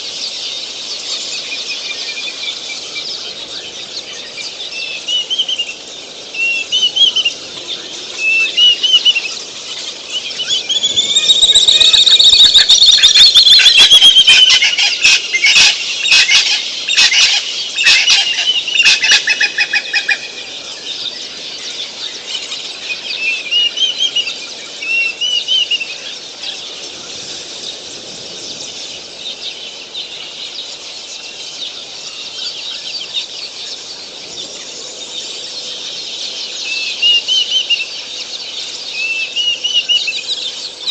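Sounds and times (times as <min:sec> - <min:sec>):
birds chirping: 0:00.0 - 0:40.9
steady high hiss: 0:00.0 - 0:40.9
drawn-out bird call: 0:10.5 - 0:20.6.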